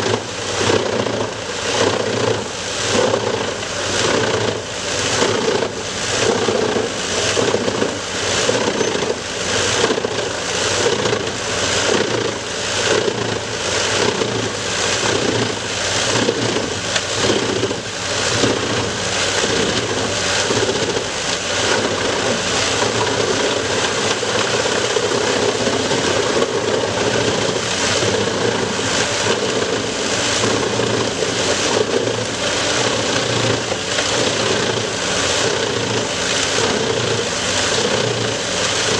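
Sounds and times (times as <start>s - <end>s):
wood chipper running: 0.0s - 38.9s.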